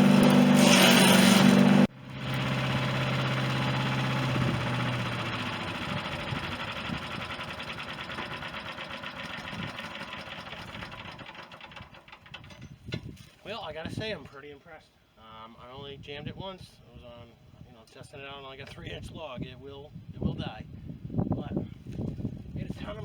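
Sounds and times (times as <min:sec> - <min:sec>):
chipper shredder engine running: 0:00.0 - 0:12.4.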